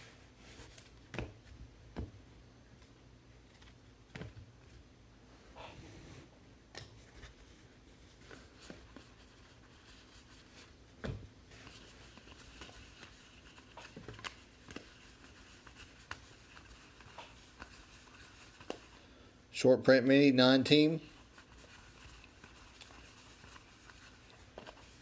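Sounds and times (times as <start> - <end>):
cards handled and sorted: 8.1 - 19.0, 21.3 - 25.0.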